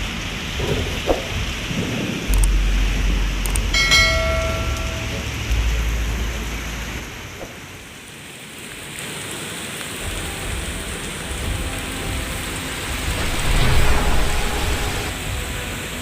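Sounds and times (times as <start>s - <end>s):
deep low rumble: 0.0s - 7.7s, 12.9s - 15.5s
heavy rain falling: 0.0s - 16.0s.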